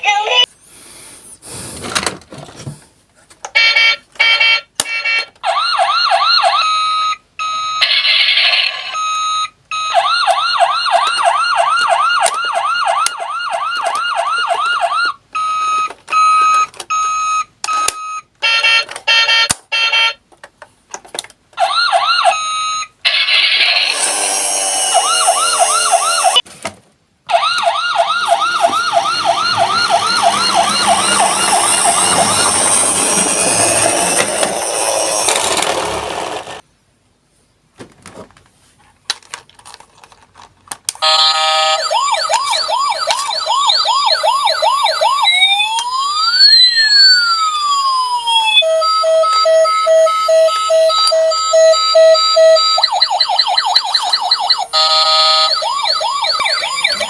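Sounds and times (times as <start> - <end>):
toy electronic siren: 3.6 - 20.2, 21.6 - 26.4, 27.3 - 36.4, 41.0 - 57.0
rushing noise: 28.1 - 36.6.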